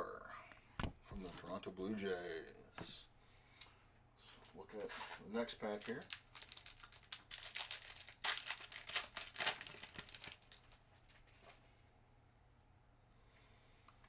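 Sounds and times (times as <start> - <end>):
foil wrapper crinkling and tearing: 4.8 - 11.4.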